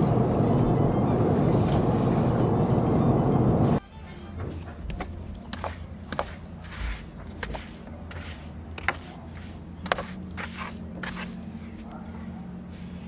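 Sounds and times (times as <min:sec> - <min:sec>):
steady low hum: 0:00.0 - 0:03.8
scrapes: 0:04.6 - 0:11.9.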